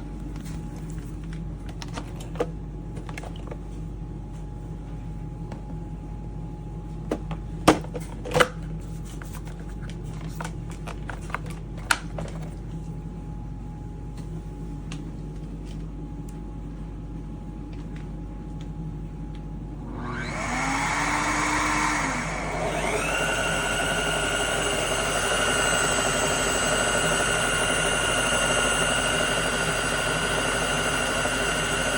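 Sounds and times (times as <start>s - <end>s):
low steady hum: 0.0s - 20.3s
vacuum motor whining: 19.8s - 31.9s.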